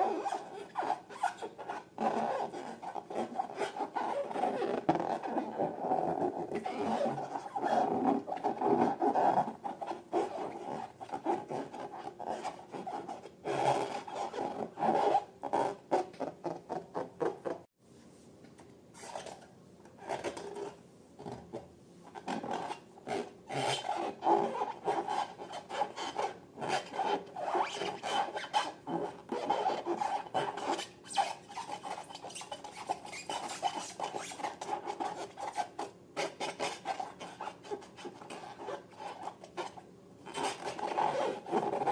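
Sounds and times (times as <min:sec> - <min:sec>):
hands rubbing rubber balloons: 0:00.0 - 0:17.6.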